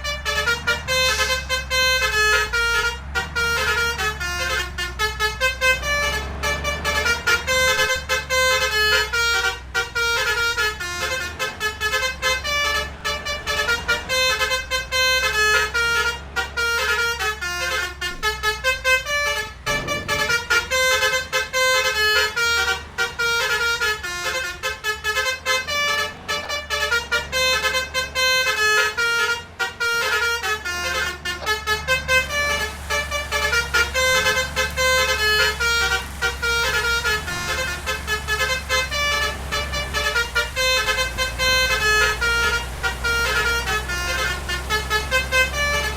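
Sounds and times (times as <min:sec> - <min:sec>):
multi-tone bus horn melody: 0:00.0 - 0:45.9.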